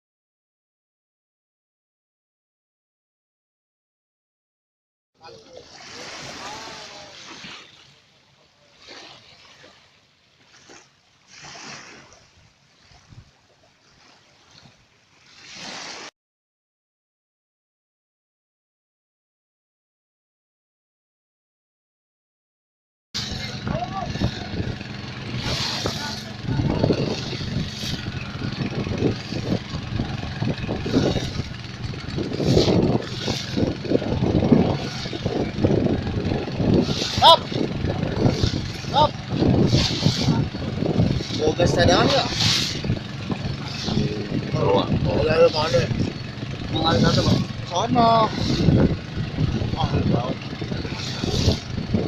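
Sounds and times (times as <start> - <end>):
water rushing in surges: 5.2 - 16.1, 23.2 - 52.0
engine running roughly: 23.2 - 52.0.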